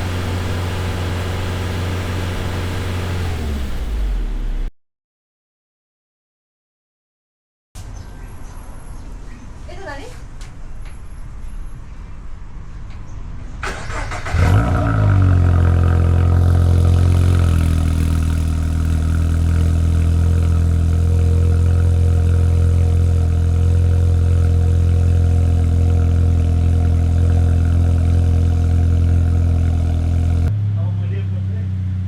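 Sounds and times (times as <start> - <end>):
car engine cranking and idling: 0.0 - 4.7, 13.6 - 32.0.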